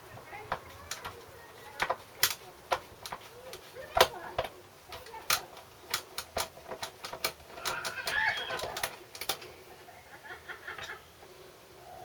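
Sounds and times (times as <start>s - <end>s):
hand tools clicking on metal: 0.0s - 9.5s.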